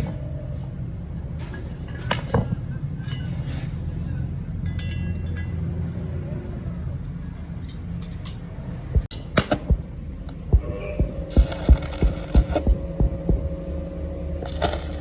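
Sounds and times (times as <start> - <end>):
low machine hum: 8.5 - 15.0
metal knocks and clinks: 14.4 - 15.0.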